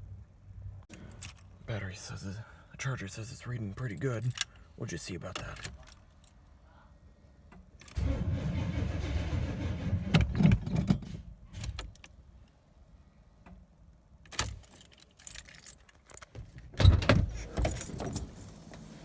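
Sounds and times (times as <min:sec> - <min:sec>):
starter cranking engine: 0:08.0 - 0:10.3
keys jingling: 0:14.3 - 0:16.6, 0:17.4 - 0:18.6.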